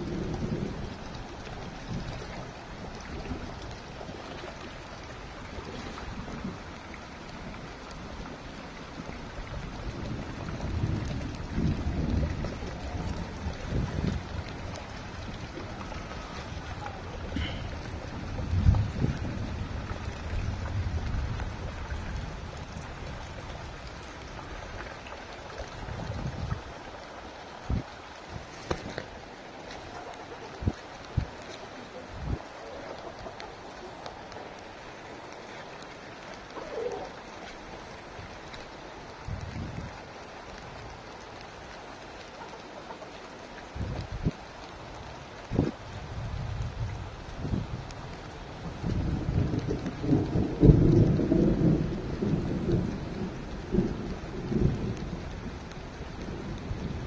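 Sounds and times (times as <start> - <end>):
water dripping: 0.0 - 57.0
wind buffeting microphone: 9.0 - 24.8, 25.6 - 26.8, 27.6 - 29.2, 30.5 - 33.5, 39.2 - 41.0, 43.6 - 57.0.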